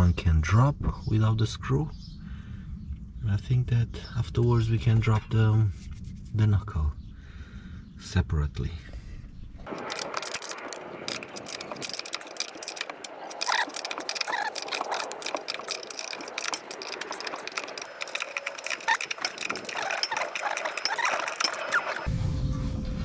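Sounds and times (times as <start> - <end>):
ratchet wrench clicking: 9.7 - 22.1.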